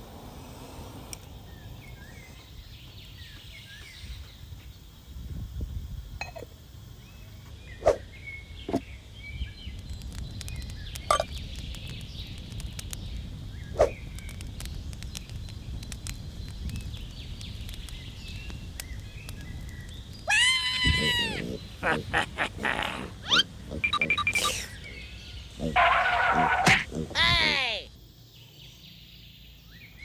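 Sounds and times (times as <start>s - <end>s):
small birds chirping: 1.1s - 30.0s
faint clicking: 8.2s - 27.2s.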